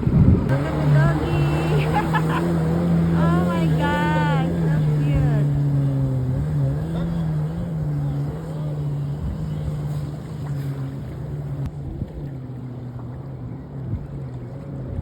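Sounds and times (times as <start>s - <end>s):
jet ski engine droning: 0.0s - 15.0s.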